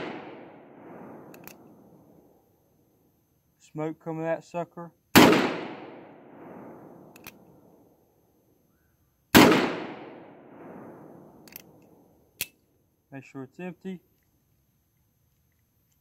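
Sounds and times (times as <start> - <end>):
revolver hammer cocking clicks: 1.3 - 1.8, 7.1 - 7.5, 11.4 - 12.6
revolver shots with echo: 9.4 - 11.3.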